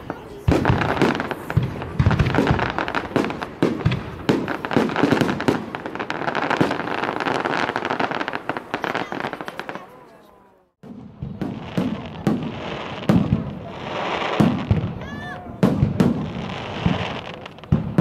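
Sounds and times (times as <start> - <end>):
fireworks crackling: 0.0 - 18.0.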